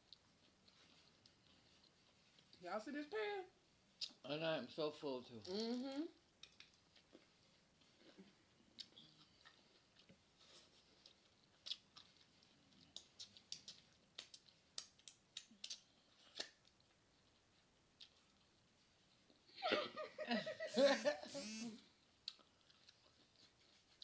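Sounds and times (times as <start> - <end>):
chewing crunchy food: 0.0 - 2.6, 5.4 - 19.5, 21.4 - 24.0.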